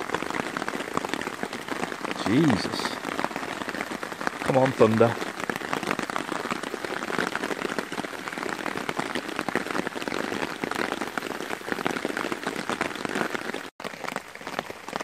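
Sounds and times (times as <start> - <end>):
heavy rain on a tarp: 0.0 - 15.0.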